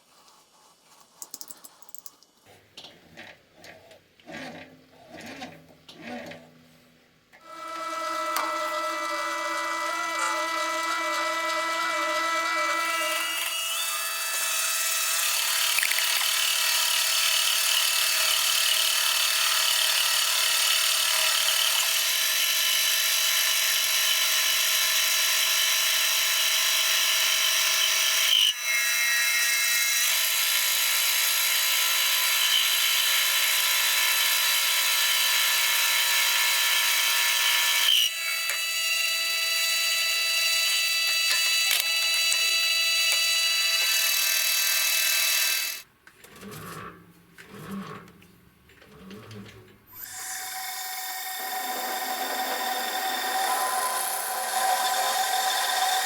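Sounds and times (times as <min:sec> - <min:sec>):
electric power tool whining: 0:07.4 - 0:30.4, 0:31.0 - 0:45.9, 0:50.0 - 0:56.0.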